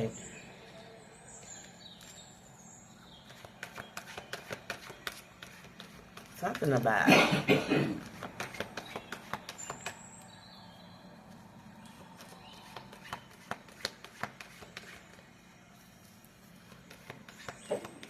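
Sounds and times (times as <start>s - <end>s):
cards being shuffled: 3.2s - 6.8s, 8.0s - 10.0s, 11.9s - 15.4s, 16.6s - 18.0s.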